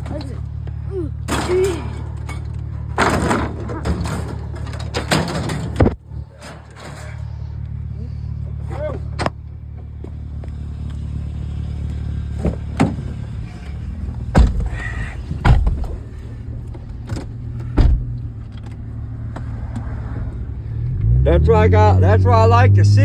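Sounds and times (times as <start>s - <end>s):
vehicle engine humming: 0.0s - 23.0s
sharp knocks and clunks: 1.3s - 6.0s, 12.4s - 19.9s.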